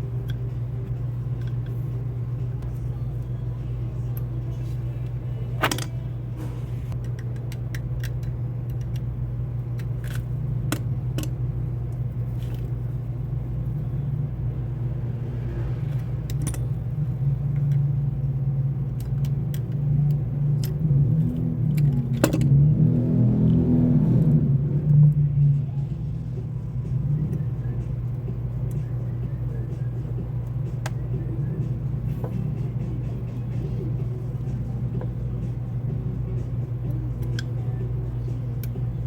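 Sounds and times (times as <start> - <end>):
vehicle engine hum: 0.0 - 39.0.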